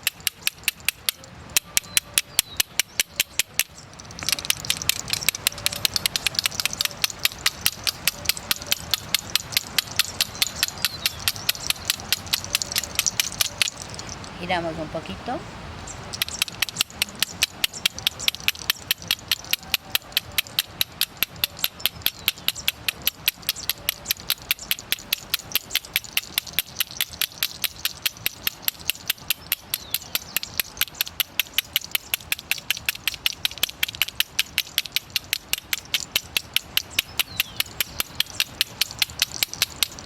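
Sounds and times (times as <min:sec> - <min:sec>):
hand rattle shaken: 0:00.0 - 0:14.4, 0:16.1 - 0:40.0.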